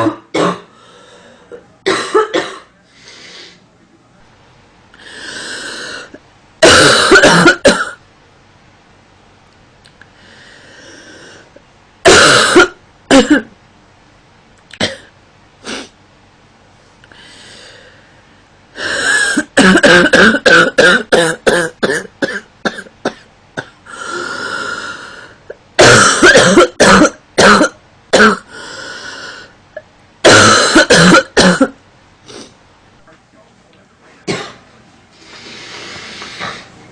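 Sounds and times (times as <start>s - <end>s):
woman coughing: 1.9s - 2.7s, 6.6s - 8.0s, 12.1s - 13.5s, 19.2s - 23.7s, 25.8s - 28.5s, 30.2s - 31.8s, 34.3s - 34.6s.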